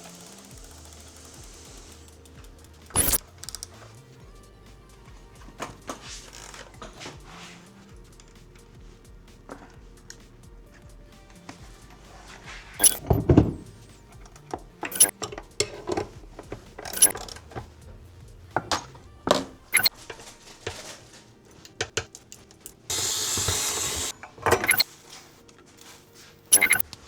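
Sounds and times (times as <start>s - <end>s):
steady hiss: 0.0s - 21.6s, 22.8s - 24.2s
metal tools clinking: 2.8s - 3.8s, 12.8s - 18.0s, 18.6s - 22.8s, 24.1s - 24.9s, 26.5s - 26.8s.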